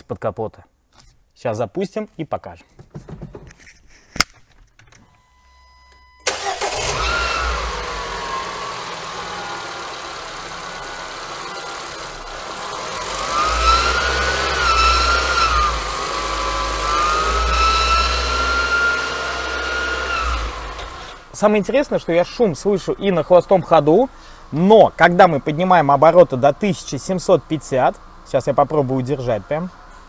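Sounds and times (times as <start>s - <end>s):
car engine starting and running: 5.4s - 30.0s
engine whine: 6.2s - 21.4s.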